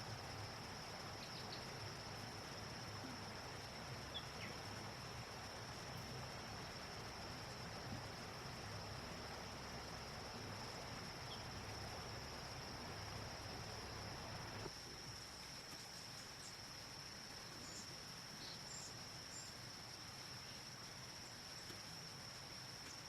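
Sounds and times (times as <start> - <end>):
background hiss: 0.0 - 23.0
high-pitched insect trill: 0.1 - 23.0.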